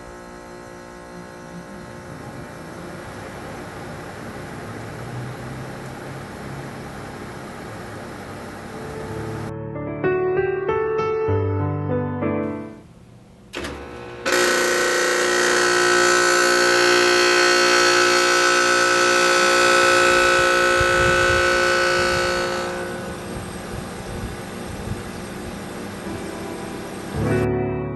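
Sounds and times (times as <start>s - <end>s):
air conditioner unit running: 0.0s - 9.6s, 12.5s - 27.5s.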